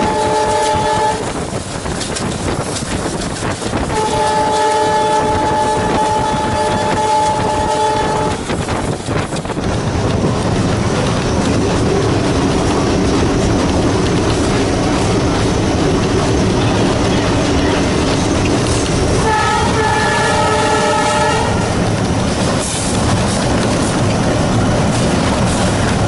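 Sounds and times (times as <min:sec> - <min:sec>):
locomotive horn blast: 0:00.0 - 0:01.4, 0:03.9 - 0:08.5, 0:19.2 - 0:21.9
diesel locomotive engine running: 0:00.0 - 0:26.0
wheel and rail noise: 0:00.0 - 0:26.0.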